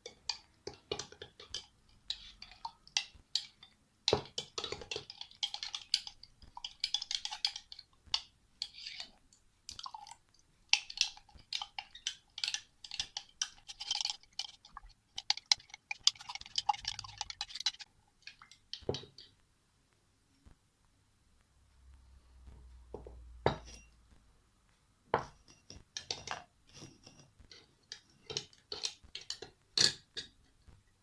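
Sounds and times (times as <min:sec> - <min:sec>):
scraping and clicking: 0:11.6 - 0:18.9.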